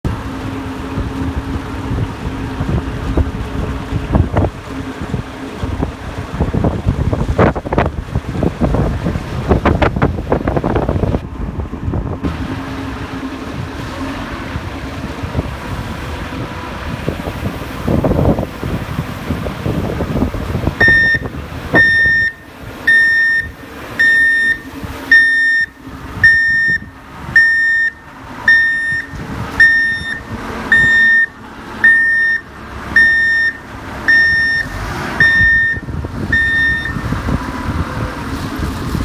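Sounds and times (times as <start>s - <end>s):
vehicle engine running: 0.0s - 39.0s
reversing alarm beeping: 20.8s - 37.1s.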